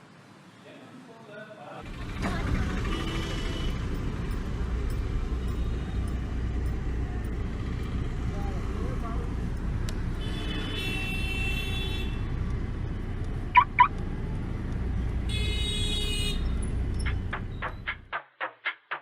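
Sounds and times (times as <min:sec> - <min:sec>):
rhythmic pulsing beat: 0:13.5 - 0:14.0, 0:17.0 - 0:19.0
loud chirps: 0:13.6 - 0:13.9.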